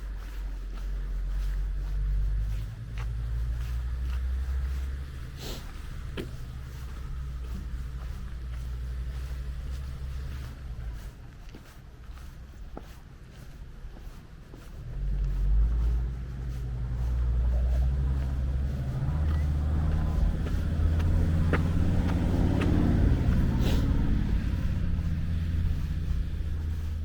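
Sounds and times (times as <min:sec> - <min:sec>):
motor rumbling: 0:00.0 - 0:12.2, 0:14.5 - 0:27.0
even hum: 0:14.8 - 0:27.0.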